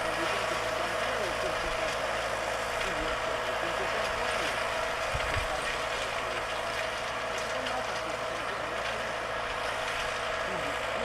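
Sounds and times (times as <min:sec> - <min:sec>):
tractor engine droning: 0:00.0 - 0:11.0.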